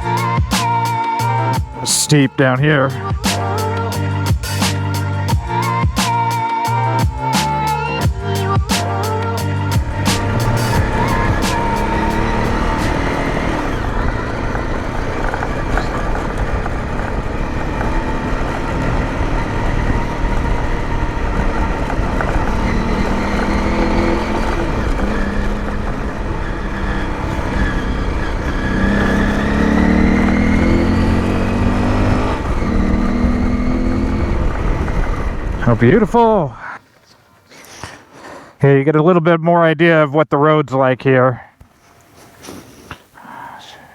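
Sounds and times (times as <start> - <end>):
motorcycle engine revving: 0.0 - 36.4
rumble of tyres on dirt road: 9.8 - 36.5.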